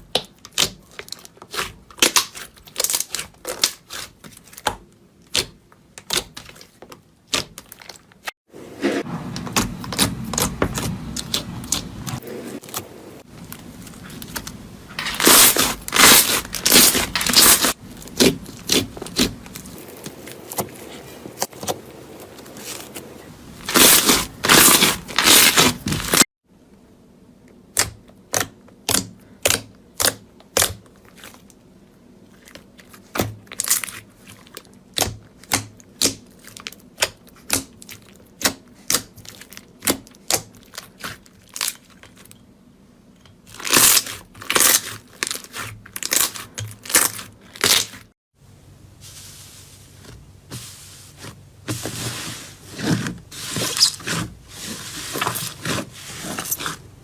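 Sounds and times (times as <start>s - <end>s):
crunchy material crackling: 9.0s - 26.3s.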